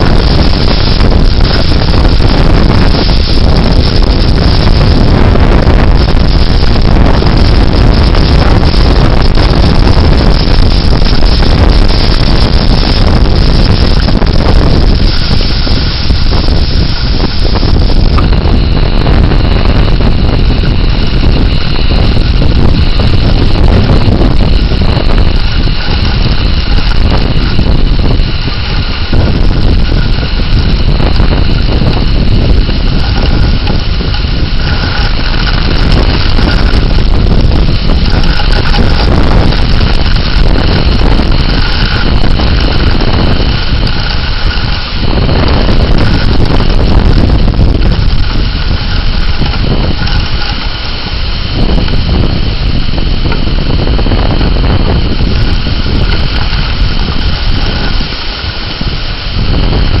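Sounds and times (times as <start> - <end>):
faint steady tones: 0.0 - 52.7
strong wind gusting on microphone: 0.0 - 60.0.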